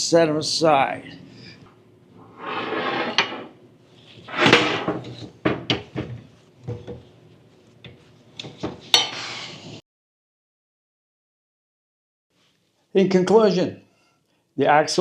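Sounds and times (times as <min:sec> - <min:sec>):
metal scraping on workbench: 0:02.2 - 0:03.6, 0:04.2 - 0:05.3.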